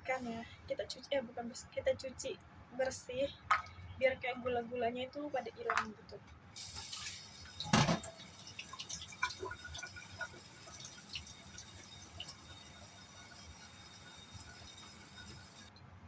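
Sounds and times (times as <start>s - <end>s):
ingredients rinsed by hand: 6.6s - 15.7s
water dripping and splashing: 6.6s - 15.7s.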